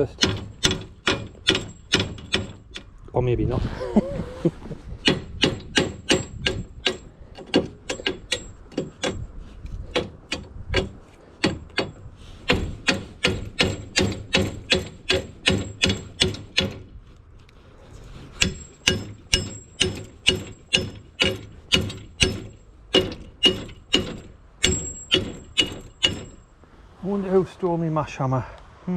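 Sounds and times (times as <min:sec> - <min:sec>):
hammer clanging on metal: 0:00.0 - 0:02.9, 0:05.0 - 0:09.3, 0:09.9 - 0:16.9, 0:18.4 - 0:26.5.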